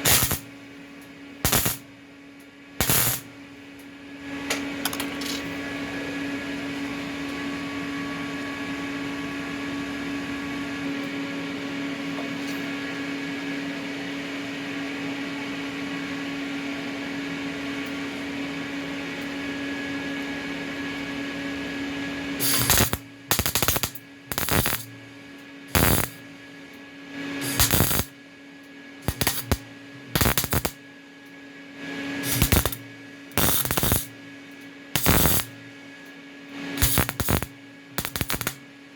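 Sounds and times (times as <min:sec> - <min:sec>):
welding crackle: 0:00.0 - 0:00.5, 0:01.4 - 0:01.9, 0:02.8 - 0:03.3, 0:22.4 - 0:24.9, 0:25.7 - 0:26.2, 0:27.4 - 0:28.1, 0:29.0 - 0:29.6, 0:30.2 - 0:30.8, 0:32.2 - 0:32.8, 0:33.4 - 0:34.1, 0:35.0 - 0:35.5, 0:36.8 - 0:38.6
welder hum: 0:00.0 - 0:00.6, 0:01.4 - 0:02.0, 0:02.8 - 0:03.6, 0:21.6 - 0:26.4, 0:27.2 - 0:28.2, 0:29.0 - 0:30.8, 0:32.1 - 0:34.2, 0:34.9 - 0:35.7, 0:36.6 - 0:38.9.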